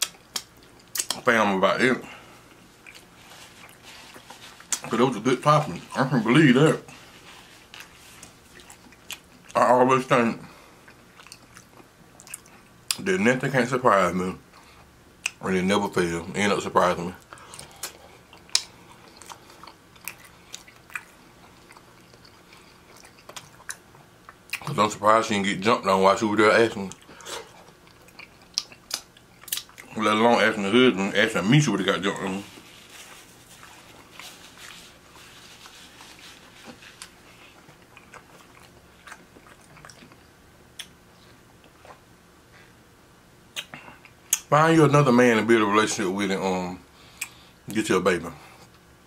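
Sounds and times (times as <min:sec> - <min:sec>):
person chewing food: 0:00.0 - 0:01.3, 0:02.0 - 0:06.0, 0:06.8 - 0:09.6, 0:10.6 - 0:13.0, 0:17.2 - 0:24.7, 0:26.9 - 0:30.0, 0:31.7 - 0:42.8.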